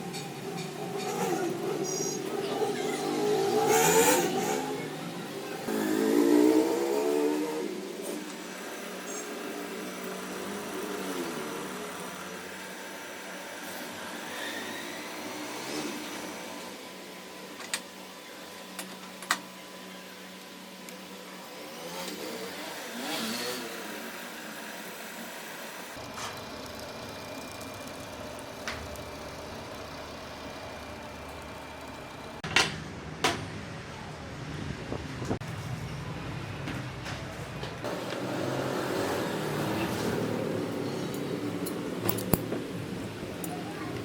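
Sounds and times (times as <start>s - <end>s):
steady background noise: 0.0s - 44.0s
engines rising and falling: 0.8s - 12.4s, 37.8s - 44.0s.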